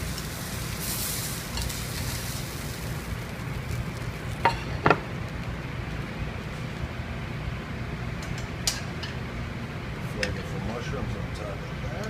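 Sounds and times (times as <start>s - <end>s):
sizzling hiss: 0.0s - 5.5s
steady low hum: 0.0s - 12.0s.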